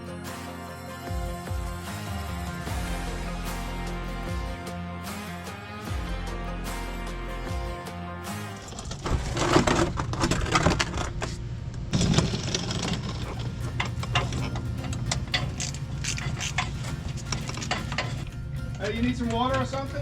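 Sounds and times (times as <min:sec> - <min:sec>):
hand tools clicking and clattering: 0:12.2 - 0:20.0.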